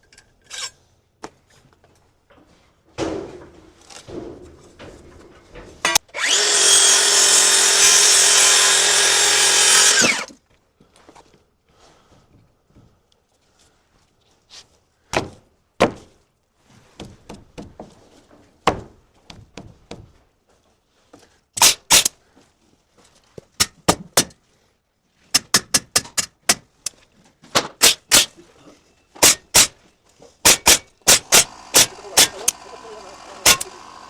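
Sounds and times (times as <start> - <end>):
hammer striking wooden framing: 3.0 - 10.3, 15.1 - 16.2, 16.9 - 18.0, 18.6 - 20.2, 23.6 - 24.4, 25.3 - 26.8, 29.2 - 29.8, 30.4 - 32.4, 33.4 - 33.7.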